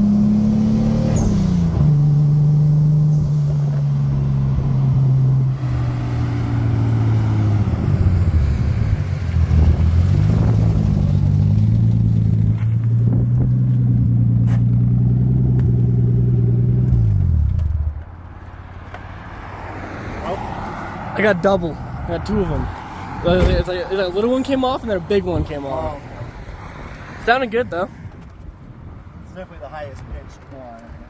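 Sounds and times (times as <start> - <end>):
turbocharged car engine revving: 0.0 - 18.0.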